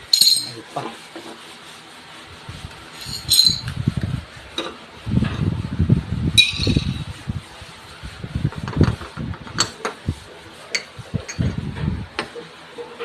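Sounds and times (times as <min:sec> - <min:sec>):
metallic clinks: 0:00.2 - 0:00.5, 0:03.0 - 0:03.7.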